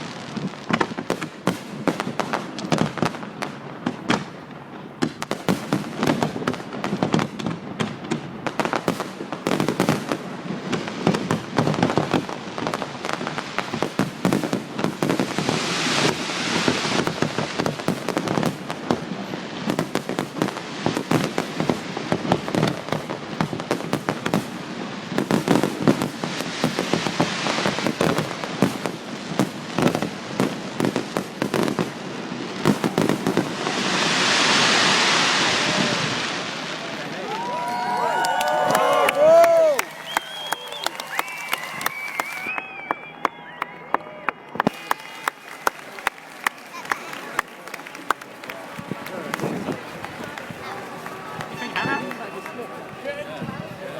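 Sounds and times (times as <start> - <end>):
fireworks bangs and crackles: 0.0 - 43.4, 44.0 - 53.9
broad rushing hiss: 32.8 - 36.9.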